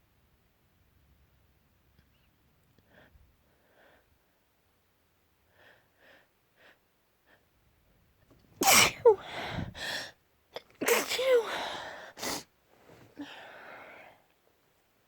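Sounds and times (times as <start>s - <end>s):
person sneezing: 8.6s - 10.0s, 10.8s - 12.4s
faint short breaths: 9.0s - 10.1s.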